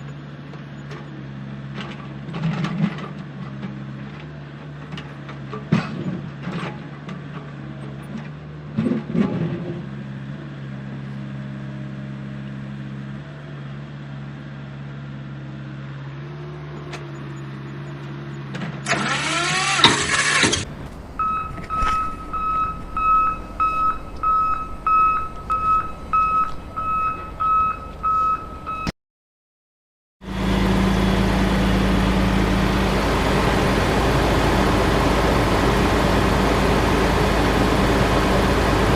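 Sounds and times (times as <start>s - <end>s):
electronic reversing beeps: 21.2s - 28.9s.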